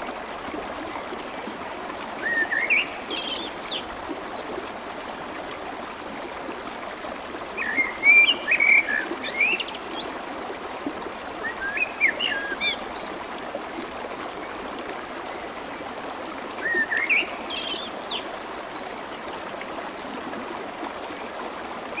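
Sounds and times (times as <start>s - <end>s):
flowing water babbling: 0.0s - 22.0s.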